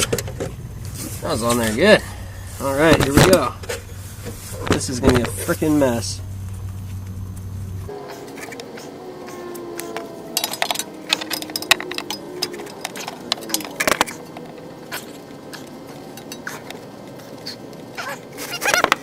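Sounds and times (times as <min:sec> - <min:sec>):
socket wrench clinking on metal: 0:09.8 - 0:14.3.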